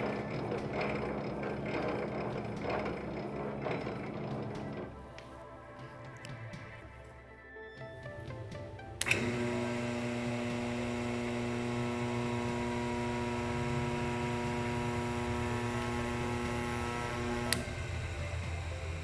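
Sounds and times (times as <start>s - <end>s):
electric motor humming: 0.0s - 5.3s, 8.0s - 19.0s
switch click: 8.1s - 18.7s.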